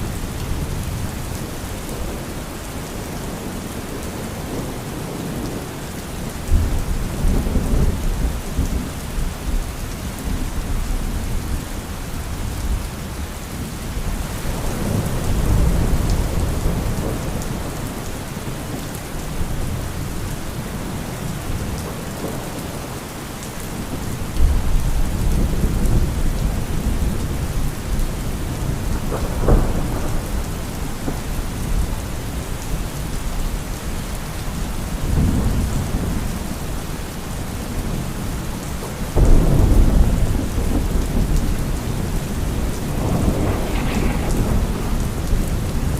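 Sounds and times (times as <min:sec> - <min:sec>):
heavy rain falling: 0:00.0 - 0:45.9
thunder rumbling: 0:23.8 - 0:45.9
thunder crack: 0:39.2 - 0:45.9.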